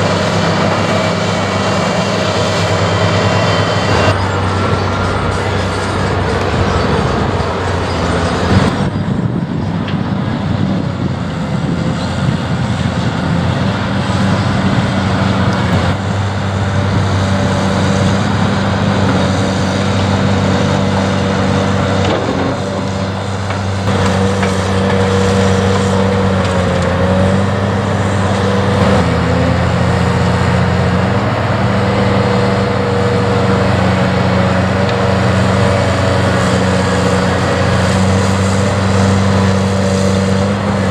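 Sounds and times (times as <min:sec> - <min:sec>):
diesel engine running under load: 0:00.0 - 0:40.9.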